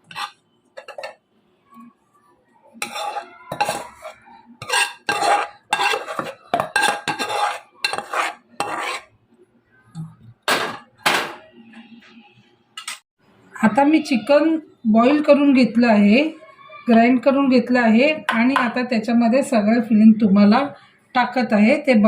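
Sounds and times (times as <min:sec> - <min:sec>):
metal spoon scraping a pan: 0:00.0 - 0:01.2, 0:02.7 - 0:09.1.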